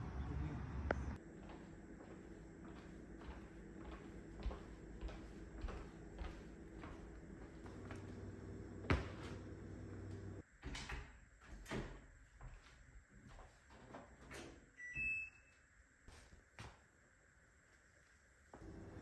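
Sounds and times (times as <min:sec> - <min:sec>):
low steady hum: 0:00.0 - 0:10.6, 0:14.8 - 0:19.0
two-note appliance beep: 0:14.8 - 0:15.6.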